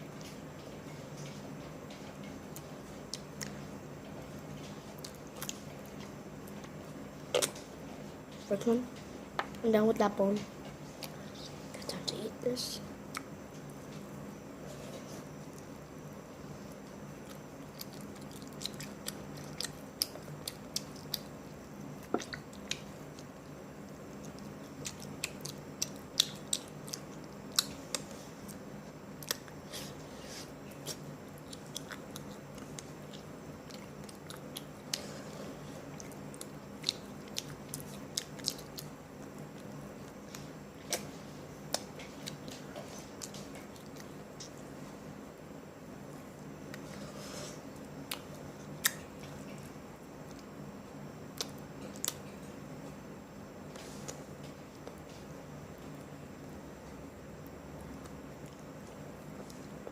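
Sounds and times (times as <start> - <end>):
steady low hum: 0.0 - 59.9
person chewing crunchy food: 4.6 - 7.6, 16.6 - 28.6, 29.2 - 44.6.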